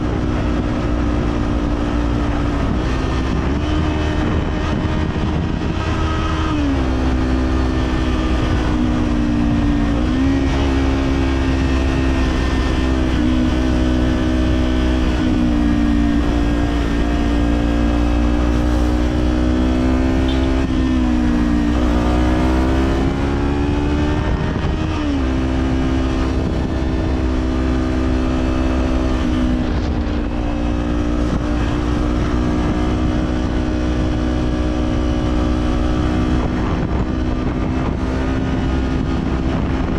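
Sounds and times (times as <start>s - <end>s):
low rumble of wind: 0.0s - 39.9s
motorcycle engine revving: 0.0s - 39.9s.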